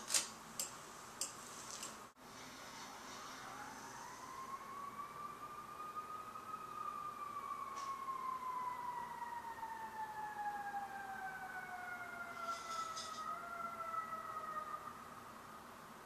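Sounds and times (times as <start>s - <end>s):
siren falling tone: 2.8s - 15.2s.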